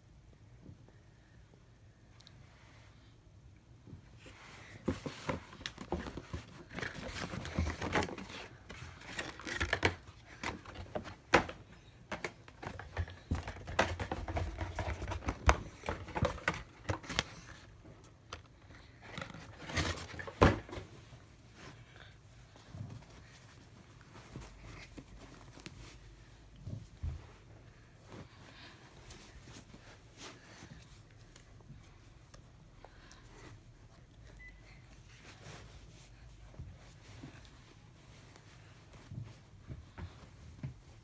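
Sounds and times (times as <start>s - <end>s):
paper and cardboard rustling: 4.3s - 32.0s.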